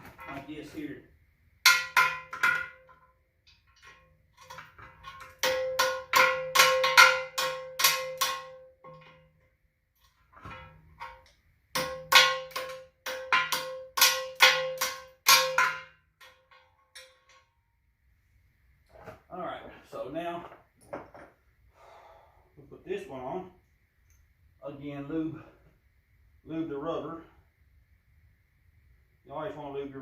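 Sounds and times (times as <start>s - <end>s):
hammer striking metal rim: 1.7s - 9.4s, 10.4s - 17.5s.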